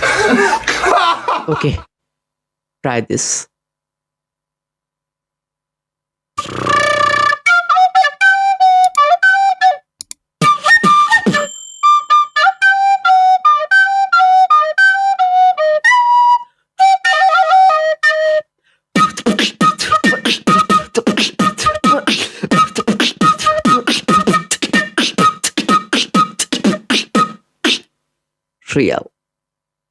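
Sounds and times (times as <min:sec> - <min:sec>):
beatboxing: 0:06.4 - 0:07.4, 0:10.4 - 0:11.5, 0:19.0 - 0:27.9.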